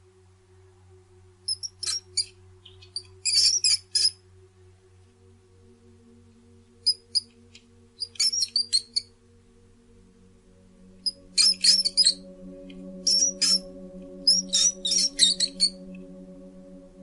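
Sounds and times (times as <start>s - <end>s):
faint low hum: 0.0s - 17.0s
bird chirping: 1.5s - 4.2s, 6.8s - 9.2s, 10.8s - 17.0s.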